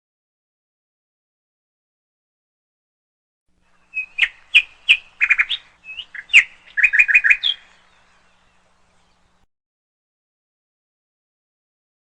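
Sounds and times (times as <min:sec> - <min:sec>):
songbird chirps and trills: 0:03.6 - 0:09.5.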